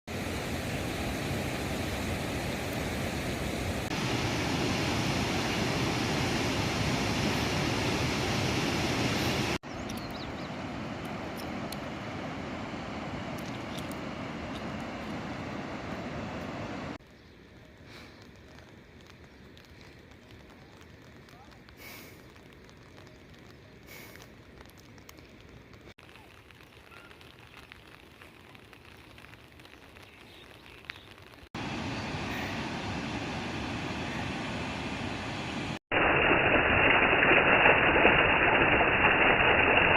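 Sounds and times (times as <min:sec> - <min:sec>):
river water rushing: 0:00.1 - 0:09.6, 0:10.3 - 0:17.0, 0:31.6 - 0:35.8
faint outdoor background noise: 0:00.1 - 0:35.8
bird chirps: 0:09.6 - 0:10.6
small clicks and ticks: 0:17.0 - 0:31.5.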